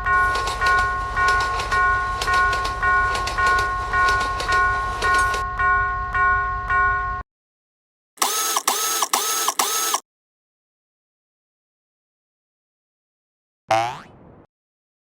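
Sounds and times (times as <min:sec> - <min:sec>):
train wheels clattering: 0:00.0 - 0:05.4
railroad crossing bell ringing: 0:00.0 - 0:07.2.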